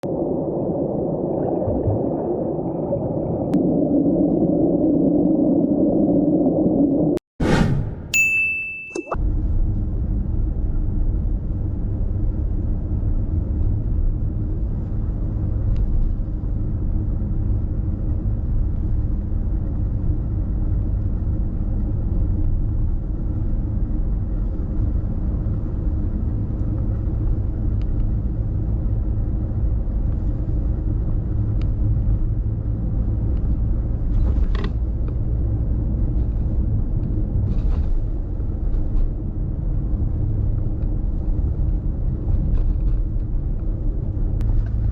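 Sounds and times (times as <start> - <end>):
car driving on road: 9.2 - 44.9.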